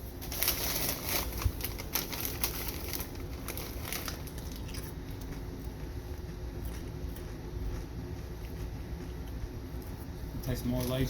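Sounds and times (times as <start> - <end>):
chip bag crinkling: 0.0 - 7.9.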